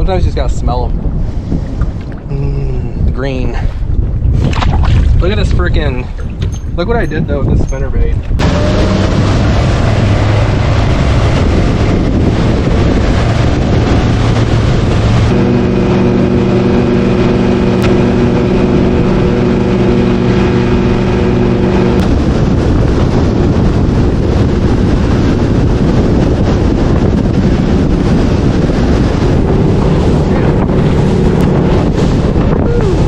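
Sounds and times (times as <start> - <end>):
wind buffeting microphone: 0.0 - 33.0
boat motor running: 8.2 - 33.0.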